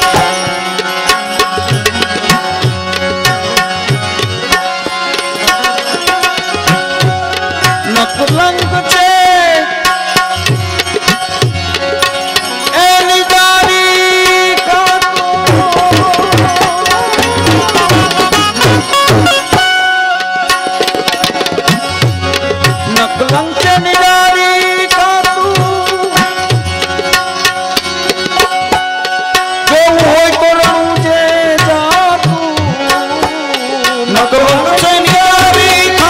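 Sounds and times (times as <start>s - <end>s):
held melody on pitched instrument: 0.0s - 36.0s
tabla playing a busy rhythm: 0.0s - 36.0s.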